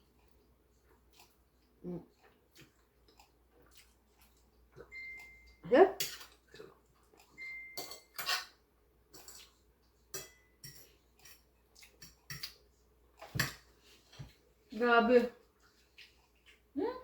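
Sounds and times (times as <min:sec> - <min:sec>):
utensils clinking against a dish: 0:04.9 - 0:06.6, 0:07.2 - 0:12.6.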